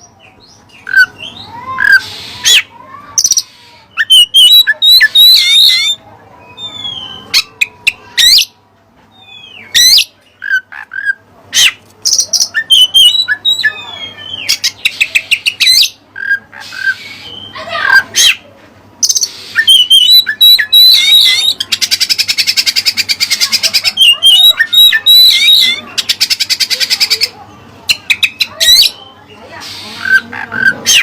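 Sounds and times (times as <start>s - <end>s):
bird singing with whistles and chirps: 4.0s - 8.5s, 12.1s - 17.6s, 19.0s - 27.3s.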